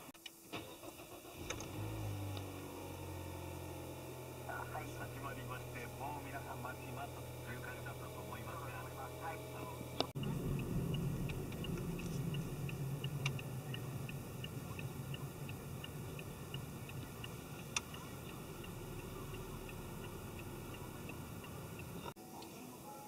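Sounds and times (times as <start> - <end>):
engine and road hum: 0.0 - 22.3
turn signal ticking: 1.4 - 22.2
sharp clicks: 10.0 - 22.1.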